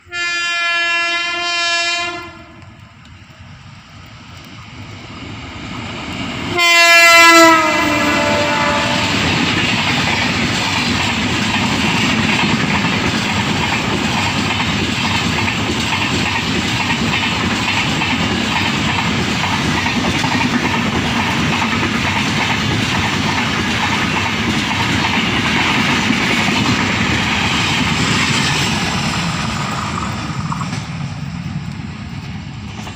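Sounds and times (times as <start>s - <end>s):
locomotive horn blast: 0.0s - 2.7s, 6.5s - 9.2s
train wheels rushing on rails: 0.0s - 32.9s.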